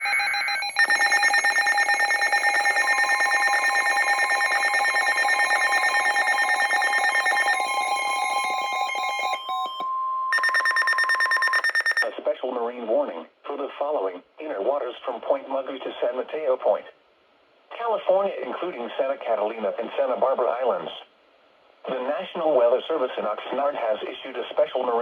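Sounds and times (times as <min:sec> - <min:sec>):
pulsing electronic alarm: 0:00.0 - 0:12.1.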